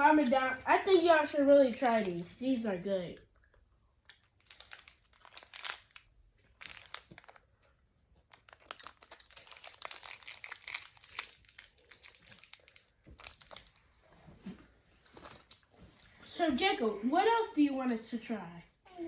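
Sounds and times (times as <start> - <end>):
plastic packaging crinkling: 4.0 - 14.2, 15.0 - 15.8.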